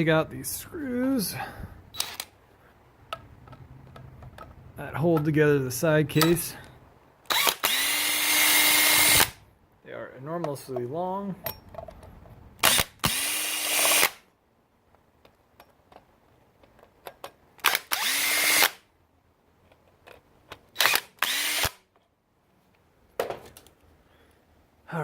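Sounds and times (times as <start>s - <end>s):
power drill spinning screws: 2.0s - 2.4s, 7.3s - 9.4s, 12.6s - 14.2s, 17.6s - 18.8s, 20.8s - 21.8s.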